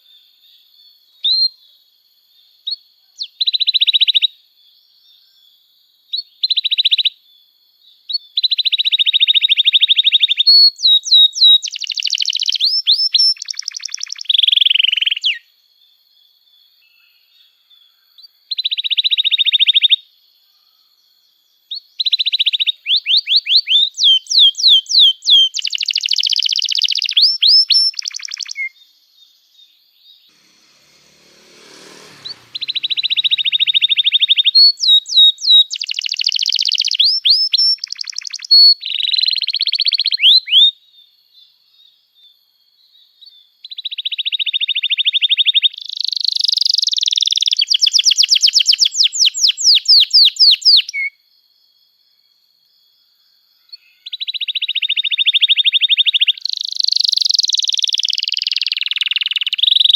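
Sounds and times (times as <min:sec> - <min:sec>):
canary singing trills and chirps: 0:08.1 - 0:15.5, 0:21.6 - 0:30.9, 0:32.3 - 0:40.7, 0:43.6 - 0:51.2, 0:53.6 - 0:59.9.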